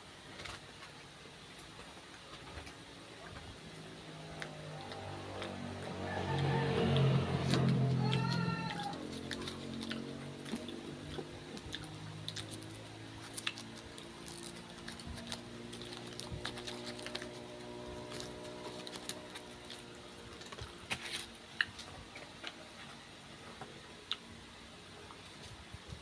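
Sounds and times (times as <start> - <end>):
faint steady hum: 0.0 - 26.0
crackers crunching: 4.2 - 23.0.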